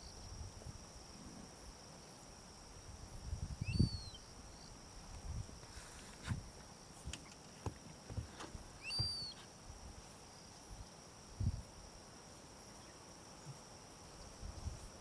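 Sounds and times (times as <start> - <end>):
high insect drone: 0.0 - 15.0
bird chirp: 3.6 - 4.7, 8.8 - 9.4.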